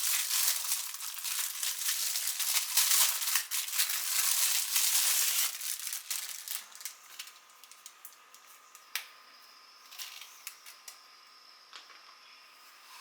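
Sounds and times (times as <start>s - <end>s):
packaging crinkling: 0.0s - 8.5s.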